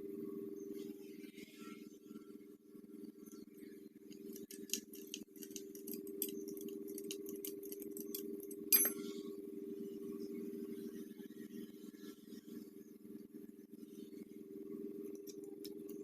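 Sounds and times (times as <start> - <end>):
metallic clicks and taps: 4.3 - 9.0
ringing metal clink: 4.3 - 9.2.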